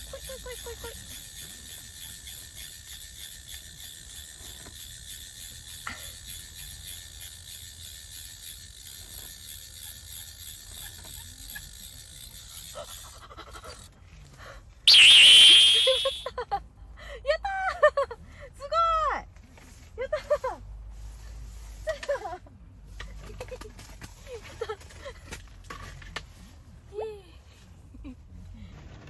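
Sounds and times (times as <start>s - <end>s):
high-pitched squeal: 14.9s - 16.3s.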